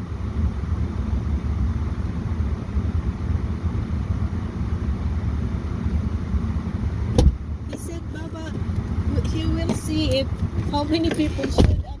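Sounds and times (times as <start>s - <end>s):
vehicle engine rumble inside cabin: 0.0s - 12.0s.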